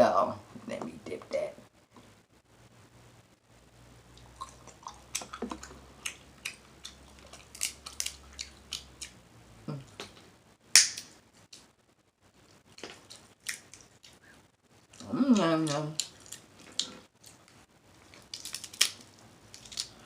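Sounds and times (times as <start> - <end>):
person chewing with wet smacking: 4.1 - 9.2, 12.4 - 20.0.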